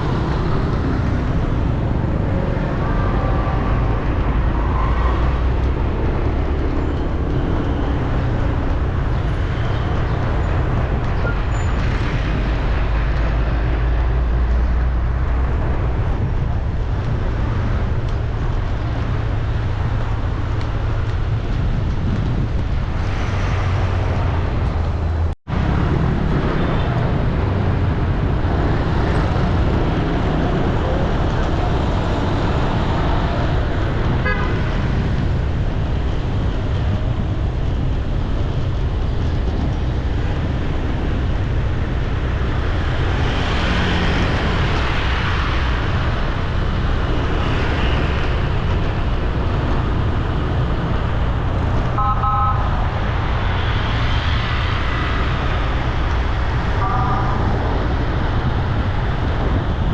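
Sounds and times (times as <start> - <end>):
traffic rumble: 0.0 - 59.9
vehicle horn: 34.2 - 34.7, 52.0 - 52.7, 56.8 - 57.4.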